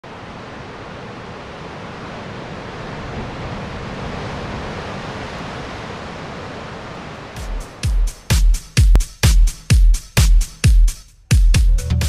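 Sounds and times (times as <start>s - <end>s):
ocean waves breaking: 0.0s - 8.8s.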